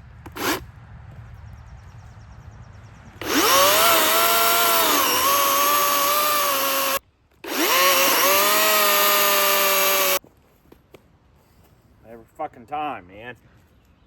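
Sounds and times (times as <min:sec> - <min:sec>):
chainsaw motor whine revving: 0:00.3 - 0:00.6, 0:03.2 - 0:10.2.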